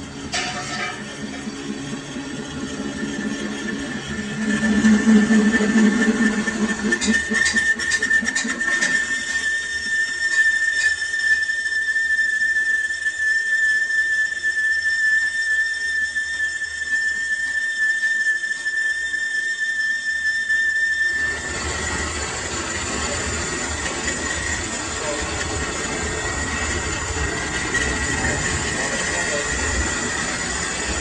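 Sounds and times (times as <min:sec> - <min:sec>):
lathe running: 0:00.0 - 0:11.5, 0:21.1 - 0:31.0
lathe cutting tool squealing: 0:00.0 - 0:31.0.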